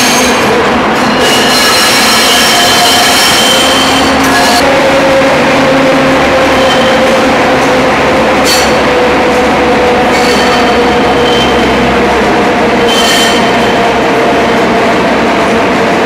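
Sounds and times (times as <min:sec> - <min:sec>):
rail vehicle rolling rumble: 0:00.0 - 0:16.0
high wheel squeals: 0:01.0 - 0:04.6, 0:06.4 - 0:07.2, 0:10.1 - 0:11.8, 0:12.8 - 0:13.8.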